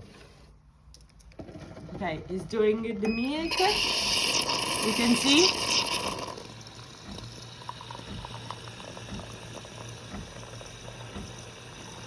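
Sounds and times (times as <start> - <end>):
coffee machine pump hum: 3.1 - 12.0.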